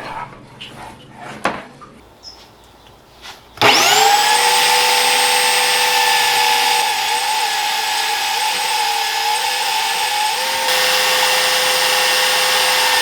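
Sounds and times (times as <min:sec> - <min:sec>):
power tool motor whining: 0:03.6 - 0:13.0.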